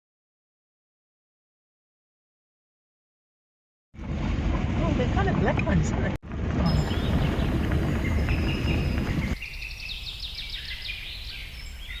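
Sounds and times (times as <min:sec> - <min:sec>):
loud low rumble: 0:06.2 - 0:09.4
birds chirping: 0:06.7 - 0:12.0.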